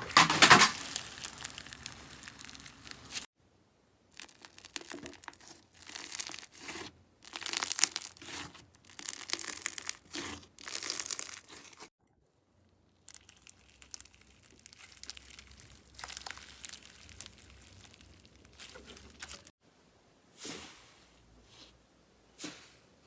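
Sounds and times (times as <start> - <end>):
slime crackling and popping: 0.0 - 3.3, 4.1 - 11.9, 12.9 - 19.5.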